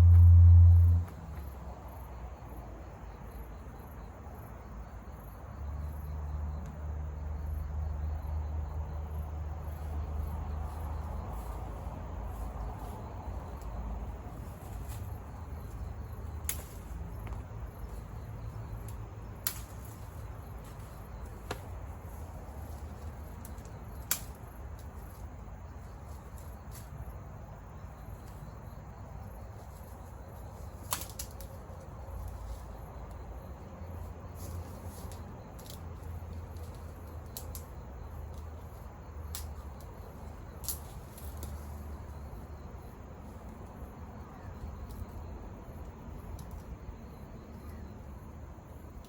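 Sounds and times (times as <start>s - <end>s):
campfire burning: 13.5s - 25.3s
fire crackles and pops: 22.6s - 25.3s, 30.8s - 31.6s.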